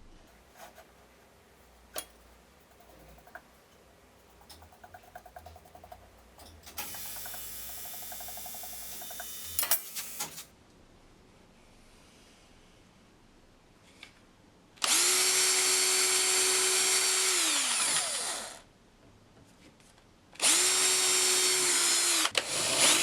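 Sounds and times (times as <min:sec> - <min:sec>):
workshop clicks: 0:01.7 - 0:10.5
rattling ticks: 0:01.8 - 0:09.7
cordless drill running: 0:06.8 - 0:10.4, 0:14.8 - 0:18.6, 0:20.4 - 0:23.0.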